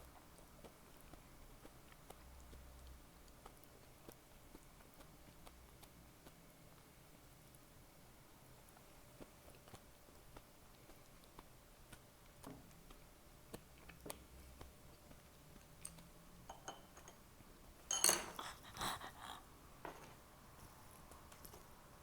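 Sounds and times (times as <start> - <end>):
soft chewing: 0.0 - 22.0
tableware clattering: 16.5 - 17.2, 17.9 - 19.3.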